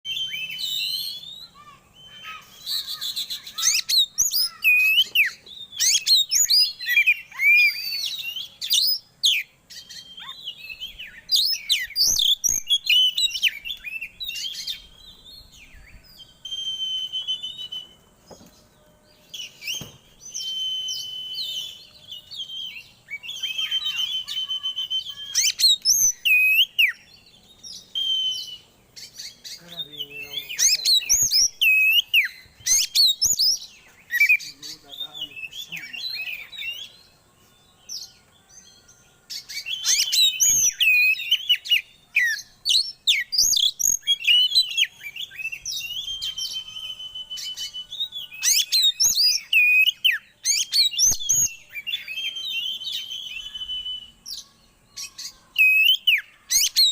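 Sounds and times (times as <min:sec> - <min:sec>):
bird singing chirps and whistles: 0:00.0 - 0:56.9.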